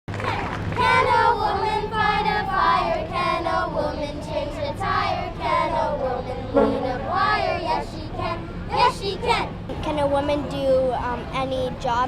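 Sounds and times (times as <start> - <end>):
girls singing together: 0.2 - 9.5.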